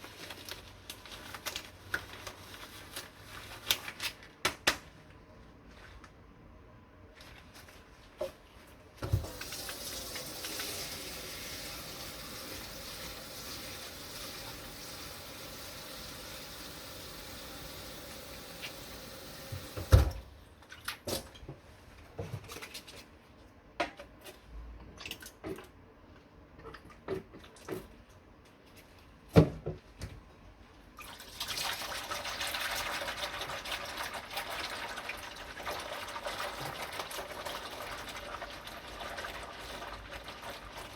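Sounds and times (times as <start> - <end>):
kitchen tap running into sink: 9.0 - 20.2, 31.2 - 40.9.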